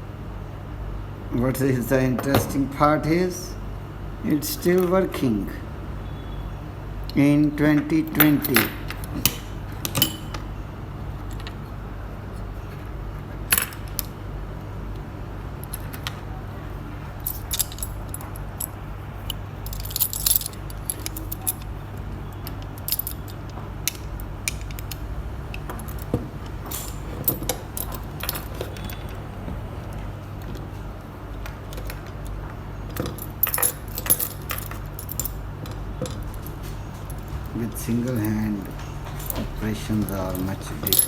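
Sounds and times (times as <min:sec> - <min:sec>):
keys jangling: 0:17.1 - 0:29.2, 0:32.2 - 0:37.5, 0:39.0 - 0:41.0.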